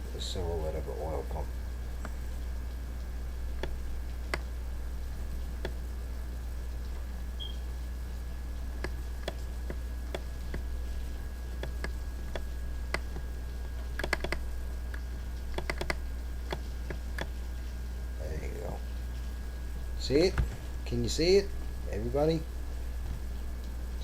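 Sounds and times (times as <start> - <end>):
low hum: 0.0 - 24.0
keyboard or mouse clicks: 14.0 - 14.4, 15.5 - 17.3.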